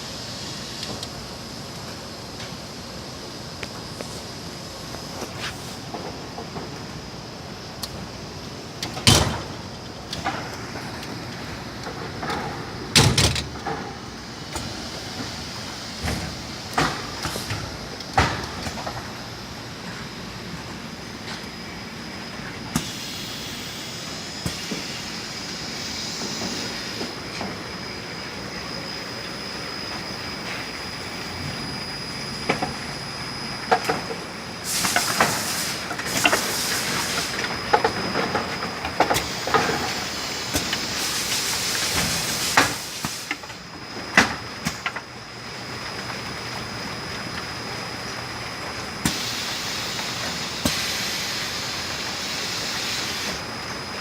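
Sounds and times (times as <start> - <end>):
short bursts of hiss: 34.6 - 37.4.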